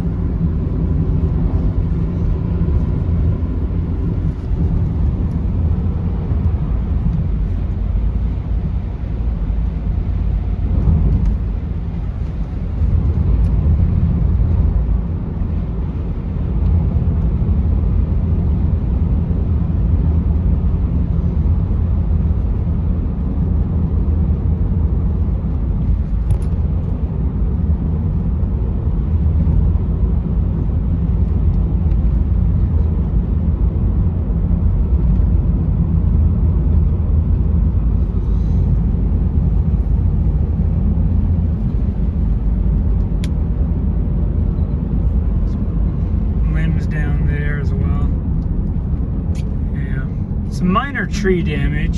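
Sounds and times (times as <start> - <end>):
car driving rumble: 0.0 - 51.9.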